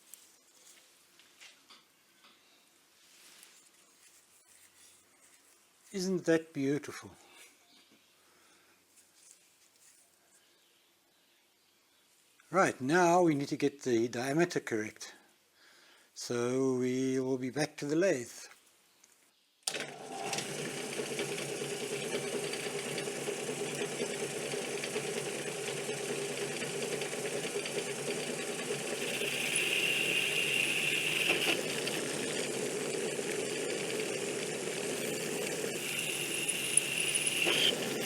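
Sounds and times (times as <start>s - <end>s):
metal lathe humming: 19.7s - 38.0s
high whine from cutting: 19.8s - 38.0s.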